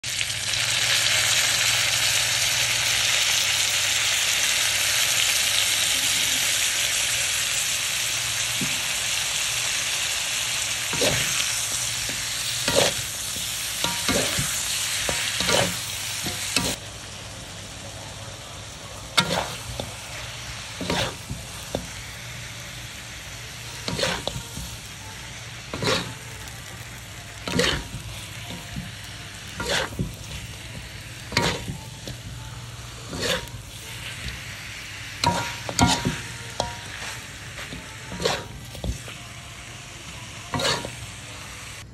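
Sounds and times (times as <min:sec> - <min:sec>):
food sizzling in hot oil: 0:00.0 - 0:41.9.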